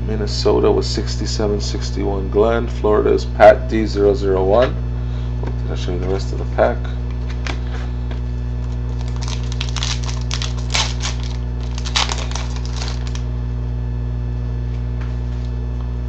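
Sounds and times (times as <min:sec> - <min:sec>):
low electrical hum: 0:00.0 - 0:16.0
cards rustling and clicking: 0:08.6 - 0:13.2.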